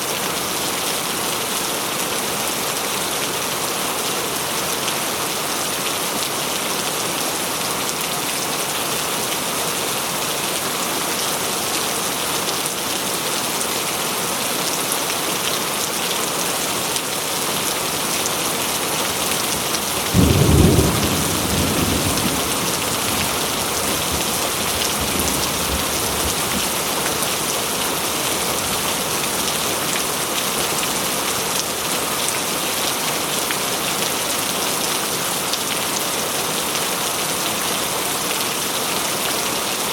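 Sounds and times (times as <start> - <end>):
steady rain splashing: 0.0 - 39.9
thunder clap and rumble: 20.0 - 26.7.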